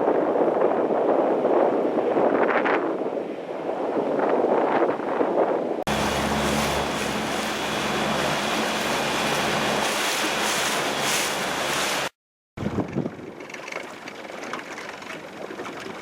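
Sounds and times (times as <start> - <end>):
rushing wind and water: 0.0 - 16.0
low ship engine hum: 5.9 - 12.1.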